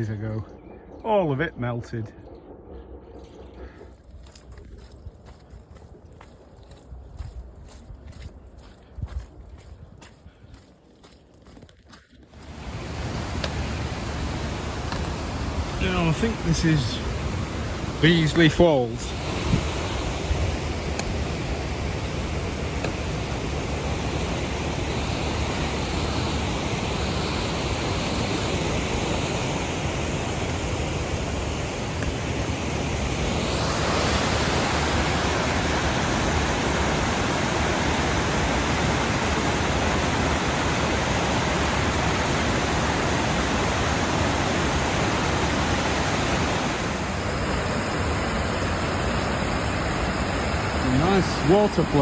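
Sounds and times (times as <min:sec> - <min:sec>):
waterfall rushing: 0:12.4 - 0:52.0.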